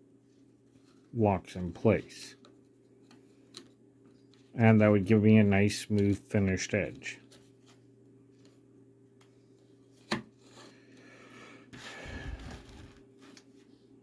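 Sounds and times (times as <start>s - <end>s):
armor rustling and rubbing: 11.9s - 14.0s.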